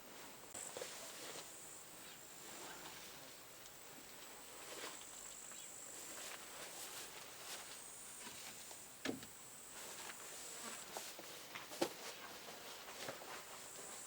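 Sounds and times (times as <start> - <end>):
insects chirring: 0.5 - 14.0.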